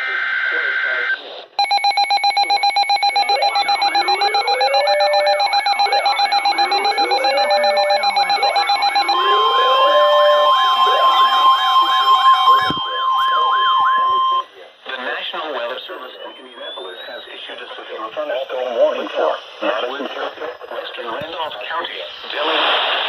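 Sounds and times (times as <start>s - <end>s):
siren yelping: 1.6s - 14.4s
steady high alert tone: 1.6s - 14.4s
rapidly pulsing beeping tone: 1.6s - 14.5s.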